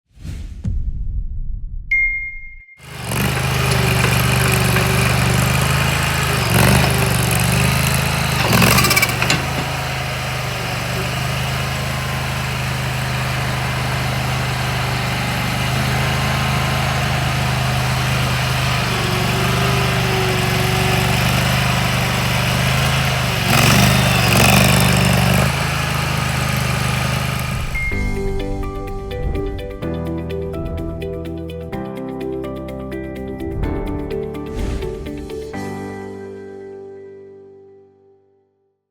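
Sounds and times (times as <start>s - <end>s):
skid steer engine running: 2.8s - 31.6s.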